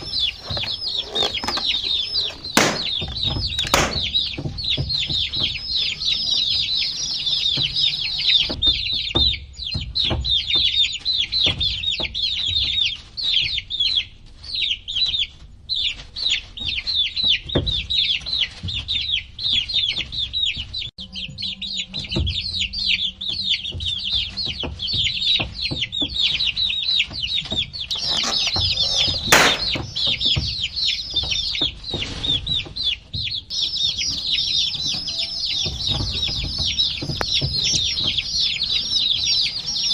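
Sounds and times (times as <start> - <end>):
taps and knocks: 0.0 - 10.3, 27.5 - 31.6
baby chicks peeping: 0.0 - 39.9.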